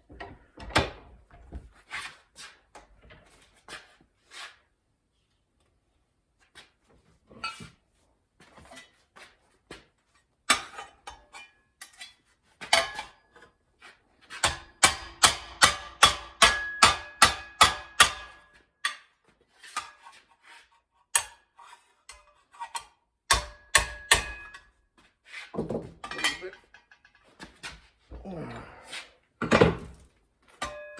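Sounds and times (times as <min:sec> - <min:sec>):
hammer striking sheet steel: 0:14.4 - 0:19.0, 0:23.3 - 0:24.6.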